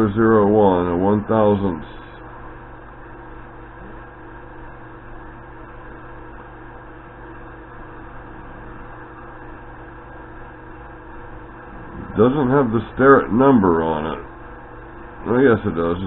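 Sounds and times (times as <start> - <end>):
mains hum: 0.0 - 16.0
steady hiss: 11.0 - 16.0.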